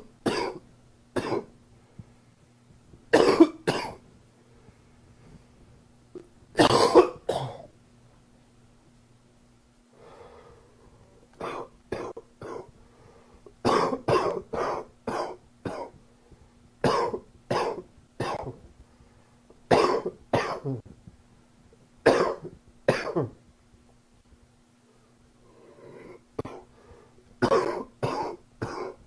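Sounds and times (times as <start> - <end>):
man coughing: 0.2 - 0.6, 3.1 - 4.0, 6.6 - 7.7, 11.4 - 12.7, 13.7 - 16.0, 16.9 - 18.6, 19.7 - 20.8, 22.1 - 23.4, 27.4 - 29.0.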